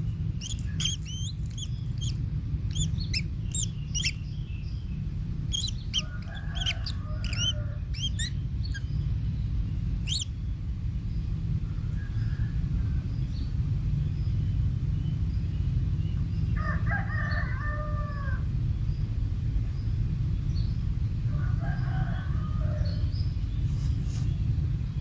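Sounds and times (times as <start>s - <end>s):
drawn-out bird call: 0.0s - 25.0s
steady low rumble: 0.0s - 25.0s.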